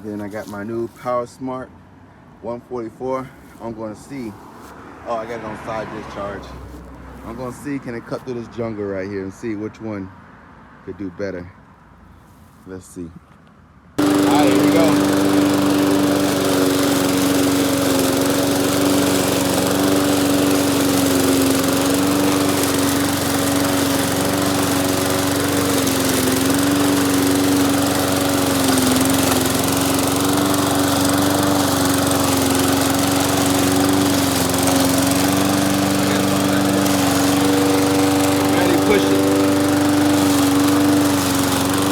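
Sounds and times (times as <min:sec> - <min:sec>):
lawn mower running: 0:14.0 - 0:41.9.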